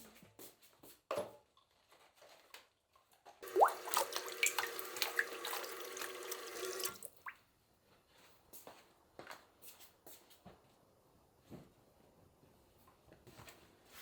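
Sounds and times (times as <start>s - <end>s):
water running into sink: 3.4s - 7.3s.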